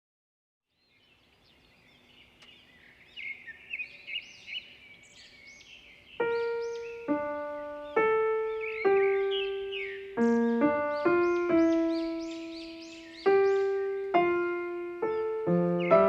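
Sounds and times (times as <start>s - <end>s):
birds chirping: 0.7s - 16.0s
slow piano notes: 6.2s - 16.0s.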